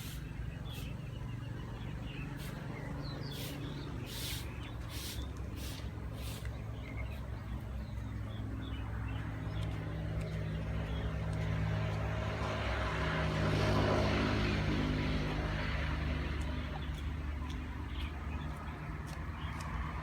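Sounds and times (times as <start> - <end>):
vehicle engine running: 0.0 - 13.0, 13.8 - 19.7.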